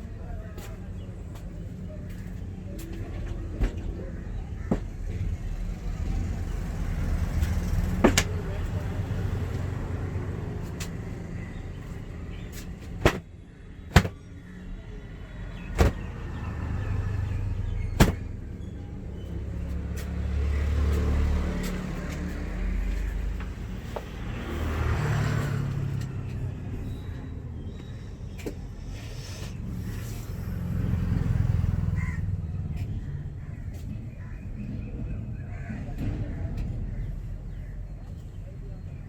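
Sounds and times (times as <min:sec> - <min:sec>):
road traffic rumbling: 0:00.0 - 0:39.0
sharp cracks or slaps: 0:13.0 - 0:13.3, 0:18.0 - 0:18.2.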